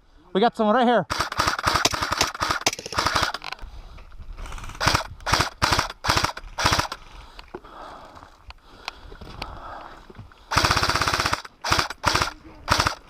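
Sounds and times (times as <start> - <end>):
airsoft rifle firing bursts: 1.1 - 3.4, 4.5 - 7.0, 10.5 - 13.0.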